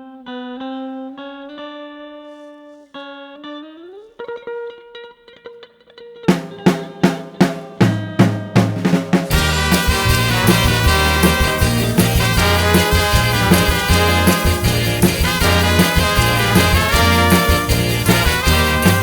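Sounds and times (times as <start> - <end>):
guitar long held notes: 0.0 - 8.3, 9.3 - 19.0
drum hits: 6.3 - 19.0.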